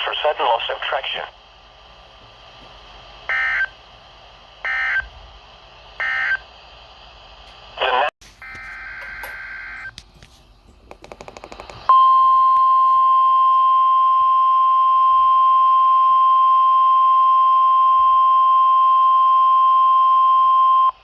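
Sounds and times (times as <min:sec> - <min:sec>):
steady high warning beep: 0:03.3 - 0:03.8, 0:11.9 - 0:21.0
fast clicking: 0:10.8 - 0:11.9.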